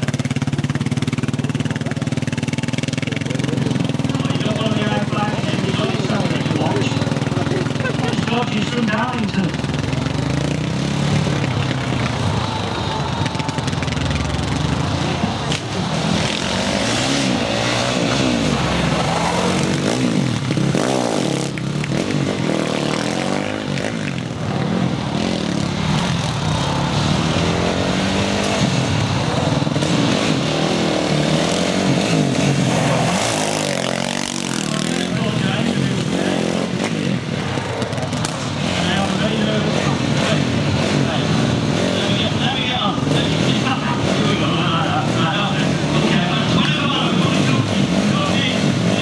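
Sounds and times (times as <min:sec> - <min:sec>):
quad bike engine revving: 0:00.0 - 0:49.0.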